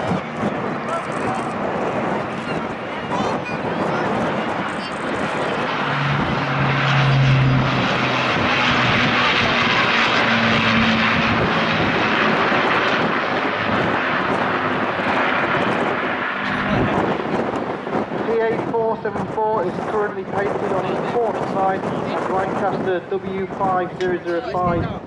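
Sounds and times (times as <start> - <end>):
propeller aircraft engines: 0.0 - 25.0.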